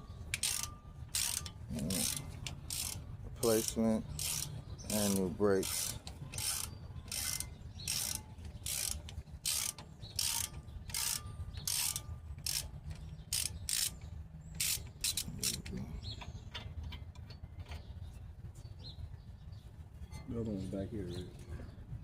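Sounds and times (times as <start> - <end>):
hand ratchet clicking: 0.3 - 15.7.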